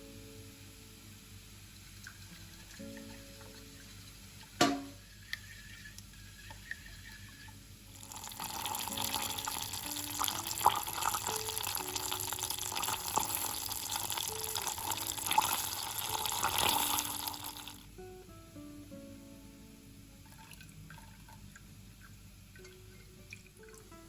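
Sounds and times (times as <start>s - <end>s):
soft acoustic guitar music: 0.0s - 24.0s
tap water running into sink: 2.0s - 17.8s.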